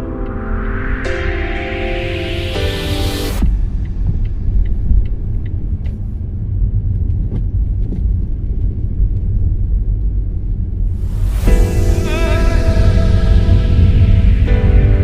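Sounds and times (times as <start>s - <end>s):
car engine and road rumble: 3.4s - 12.0s.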